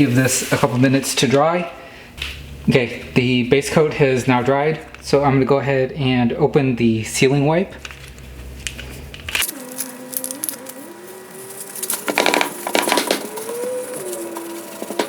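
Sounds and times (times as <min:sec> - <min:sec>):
foil pouch tearing and crinkling: 0:09.3 - 0:15.0.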